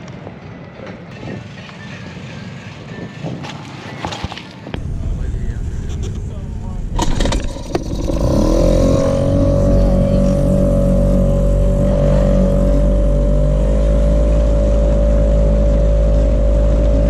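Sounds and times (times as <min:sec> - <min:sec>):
outboard motor throttling up: 0:04.8 - 0:17.0.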